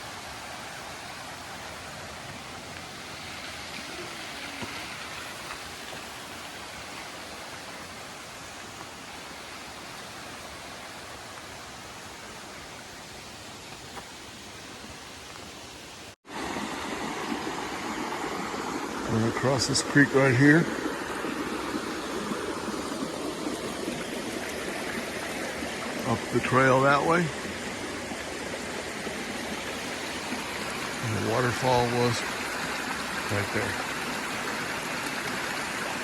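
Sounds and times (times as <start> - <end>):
waterfall rushing: 0.0 - 13.5, 16.0 - 36.0
creek water rushing: 0.0 - 36.0.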